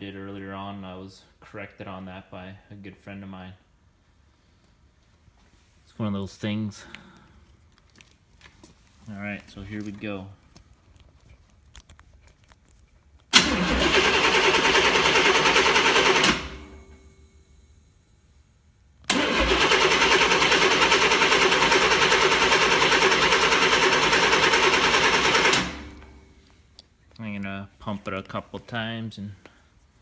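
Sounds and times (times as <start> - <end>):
engine cranking on starter motor: 13.3 - 17.3, 19.0 - 26.4.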